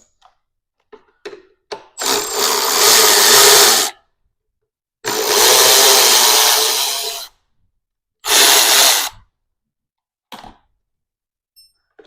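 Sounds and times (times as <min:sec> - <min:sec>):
power tool running: 0:02.0 - 0:03.9, 0:05.1 - 0:07.3, 0:08.3 - 0:09.2.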